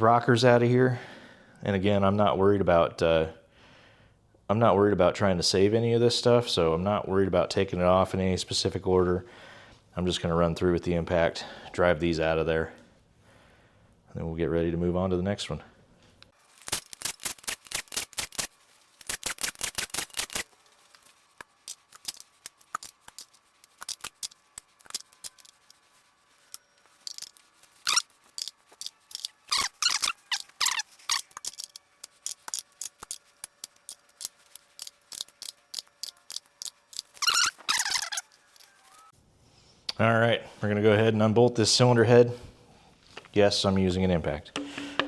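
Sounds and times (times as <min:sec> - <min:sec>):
metallic clicks and clinks: 0:16.5 - 0:25.8, 0:26.5 - 0:39.1.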